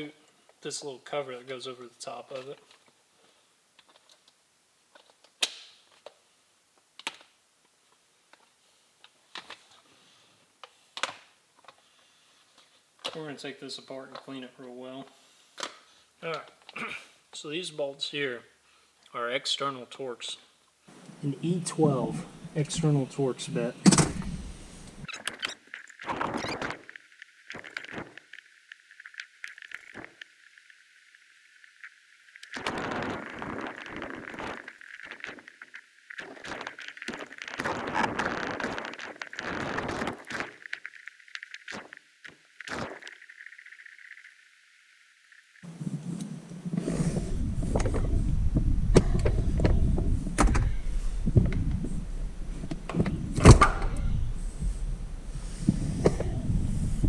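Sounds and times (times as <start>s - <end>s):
parts clicking and knocking: 25.1s - 45.6s.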